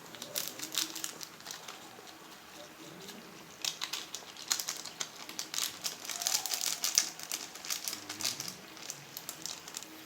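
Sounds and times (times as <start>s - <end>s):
sachets crinkling and rustling: 0.0s - 10.0s.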